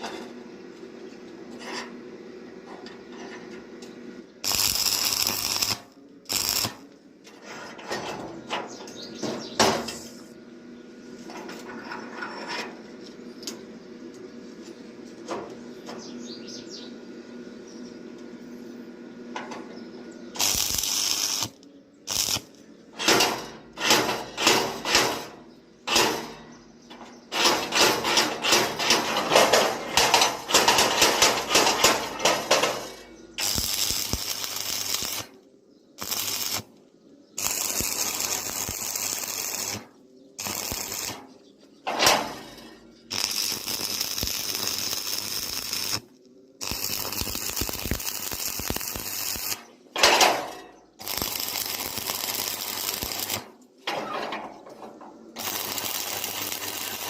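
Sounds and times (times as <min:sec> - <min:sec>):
iron pieces clanking: 0:23.0 - 0:33.2, 0:50.0 - 0:51.3, 0:53.0 - 0:56.9
harsh noise bursts: 0:55.4 - 0:57.0.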